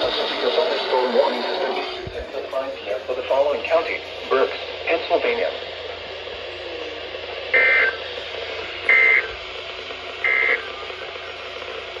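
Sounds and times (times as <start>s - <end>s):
radio hiss: 0.0s - 12.0s
digital data tone bursts: 7.5s - 8.1s, 8.8s - 9.4s, 10.2s - 10.8s.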